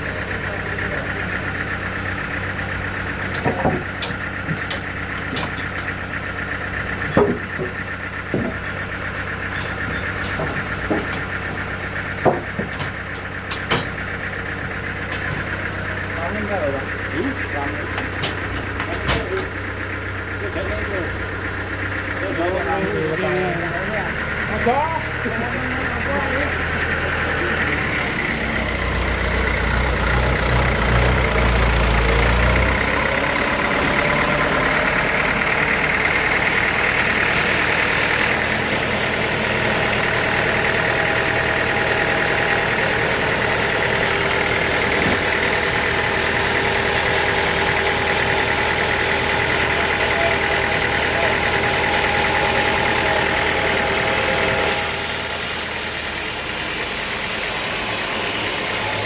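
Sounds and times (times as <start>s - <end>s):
sawmill machinery humming and whining: 0.0s - 59.0s.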